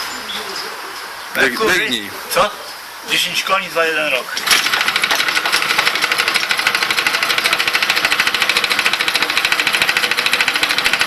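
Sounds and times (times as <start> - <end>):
outboard motor running: 4.4 - 11.0.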